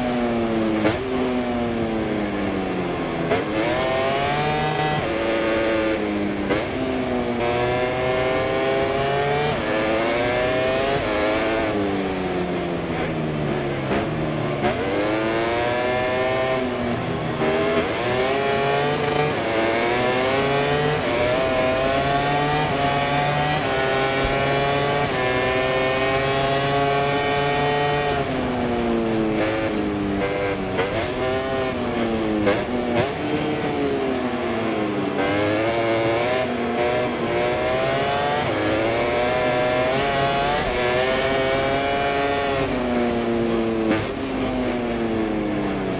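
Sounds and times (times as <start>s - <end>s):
racing motorcycle engine shifting: 0.0s - 45.9s.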